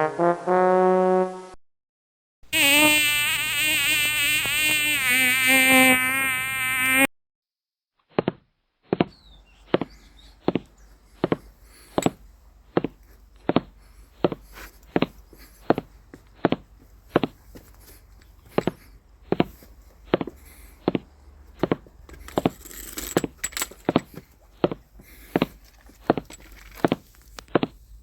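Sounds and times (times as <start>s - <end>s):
buzzing wavering tone: 2.6s - 7.1s.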